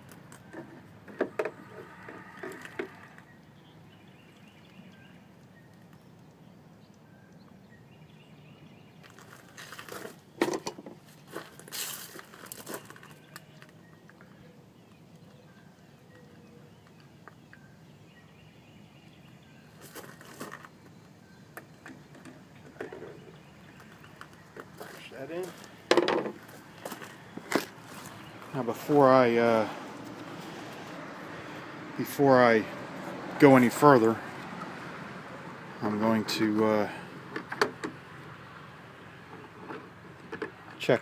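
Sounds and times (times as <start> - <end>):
rustling: 11.0 - 13.4.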